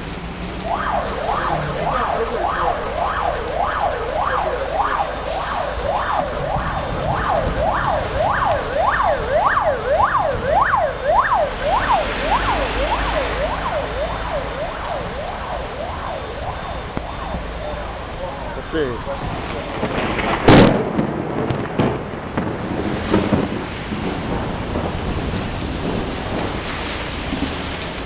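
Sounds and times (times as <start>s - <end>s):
siren yelping: 0.5s - 20.4s.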